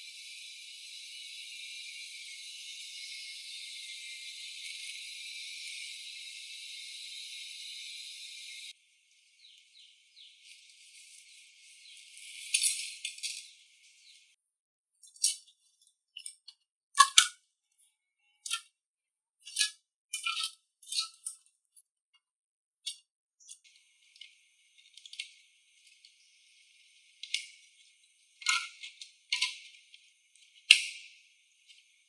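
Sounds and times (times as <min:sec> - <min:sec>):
clicks of small hard parts: 0:16.2 - 0:17.4, 0:18.4 - 0:18.7, 0:28.4 - 0:29.7, 0:30.7 - 0:31.1.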